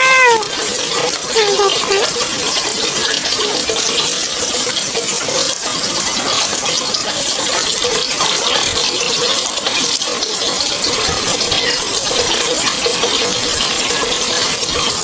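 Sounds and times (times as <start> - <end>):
water pouring steadily: 0.0 - 15.0.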